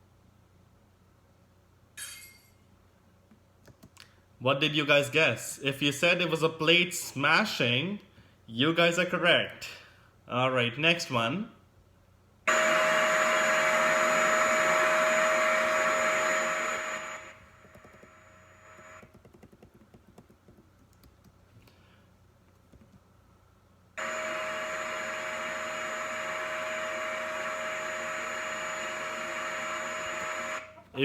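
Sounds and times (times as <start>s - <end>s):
vacuum cleaner whine: 12.5s - 19.0s, 24.0s - 31.0s.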